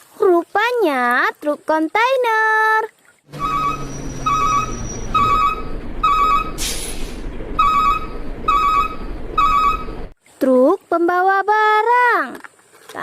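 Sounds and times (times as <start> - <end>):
electronic ringing trill: 3.4 - 6.6, 7.6 - 10.1
short hiss: 6.6 - 7.3.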